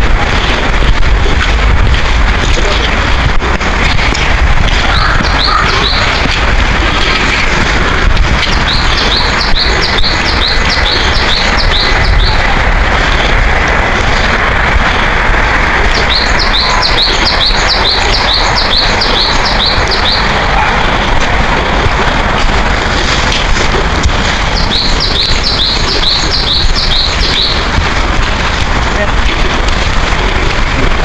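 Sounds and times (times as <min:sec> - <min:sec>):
songbird chirping: 0:04.9 - 0:06.4, 0:08.4 - 0:12.5, 0:15.9 - 0:20.5, 0:24.5 - 0:27.7.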